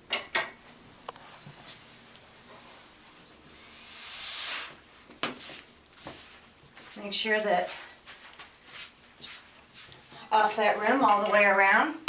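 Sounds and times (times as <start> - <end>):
tire bead hissing off rim: 0.8 - 4.8.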